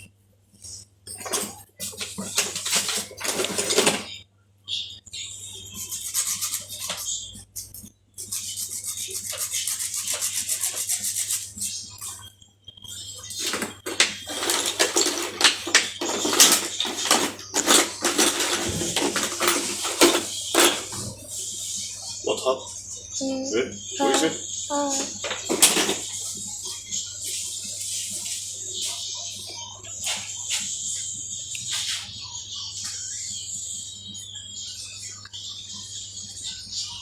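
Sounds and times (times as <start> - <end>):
tools clinking and scraping: 1.1 - 4.2, 13.3 - 21.4, 24.9 - 26.4
rasping on metal: 8.2 - 11.7.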